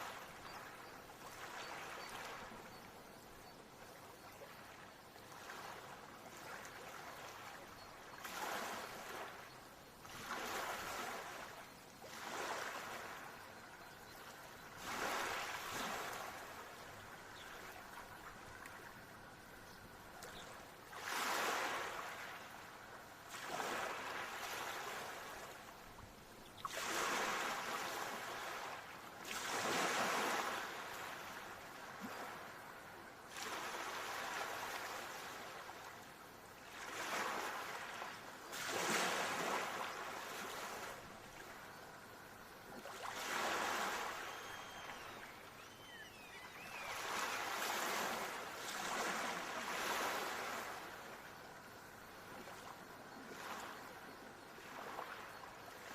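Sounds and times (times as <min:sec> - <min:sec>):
waves breaking: 0:10.0 - 0:13.4, 0:14.4 - 0:25.9, 0:26.6 - 0:32.6, 0:33.3 - 0:36.0, 0:36.6 - 0:51.2
faint high chirps: 0:44.0 - 0:47.6.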